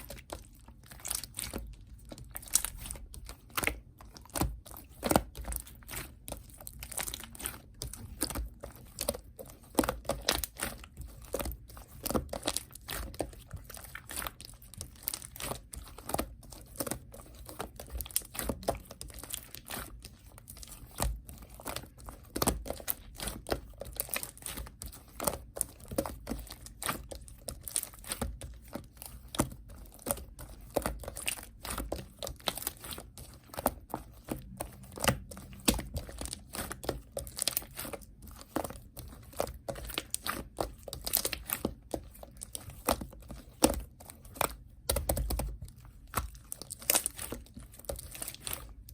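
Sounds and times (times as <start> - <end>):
slime crackling and popping: 0.0 - 48.9.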